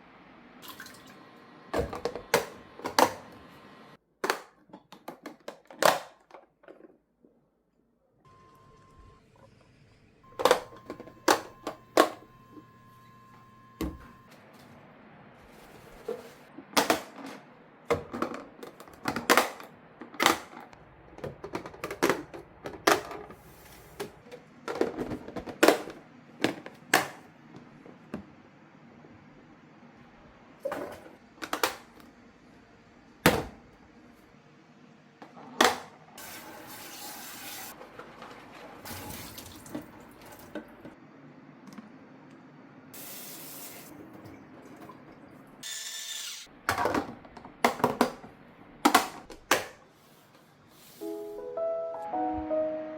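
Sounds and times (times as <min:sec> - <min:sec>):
kitchen items clattering: 0:10.3 - 0:12.4, 0:15.4 - 0:27.3, 0:30.6 - 0:32.0, 0:35.3 - 0:41.0, 0:46.6 - 0:49.8
kitchen tap running: 0:36.2 - 0:40.9, 0:43.0 - 0:45.3.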